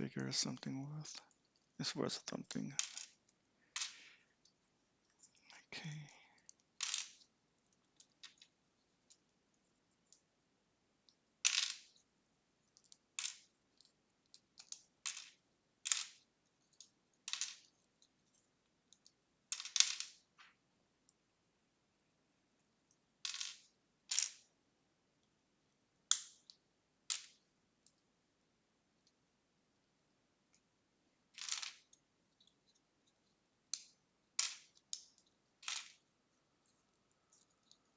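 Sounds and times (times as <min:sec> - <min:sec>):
plastic bricks clicking: 0:12.7 - 0:17.8, 0:26.1 - 0:27.4, 0:31.3 - 0:32.6, 0:33.7 - 0:36.0.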